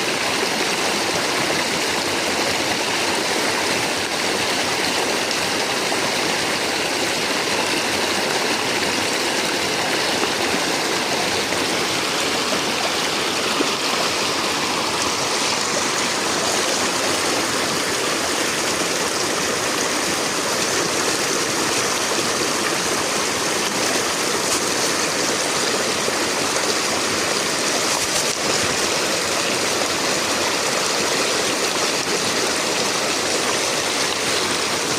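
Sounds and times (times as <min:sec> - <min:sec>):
river water rushing: 0:00.0 - 0:34.9.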